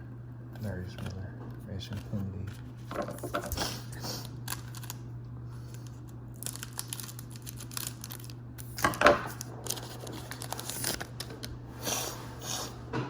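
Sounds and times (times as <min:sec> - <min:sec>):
steady low hum: 0:00.0 - 0:13.0
foil pack crinkling and tearing: 0:01.8 - 0:11.5.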